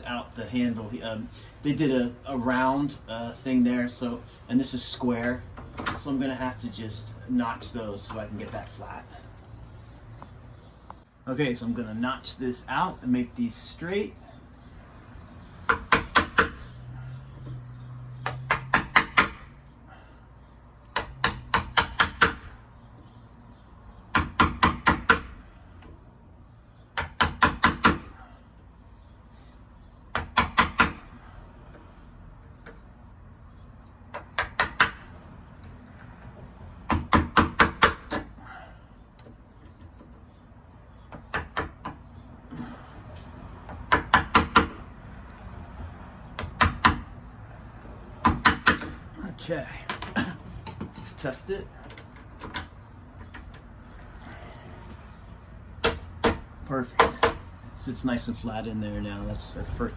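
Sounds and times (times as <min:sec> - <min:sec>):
hammer tapping chisel on wood: 0:15.7 - 0:16.6, 0:18.2 - 0:19.4, 0:20.9 - 0:22.4, 0:27.0 - 0:28.1, 0:30.1 - 0:31.0, 0:34.1 - 0:35.0, 0:41.1 - 0:42.0, 0:43.7 - 0:44.8, 0:48.2 - 0:49.0, 0:55.8 - 0:57.5.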